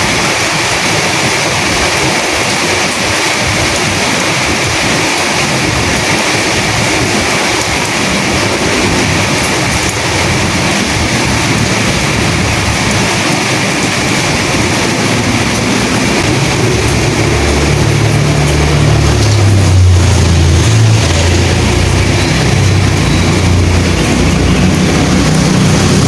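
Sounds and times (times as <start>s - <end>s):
steady rain: 0.0s - 26.0s
wind noise: 0.0s - 26.0s
low rumble: 13.8s - 26.0s.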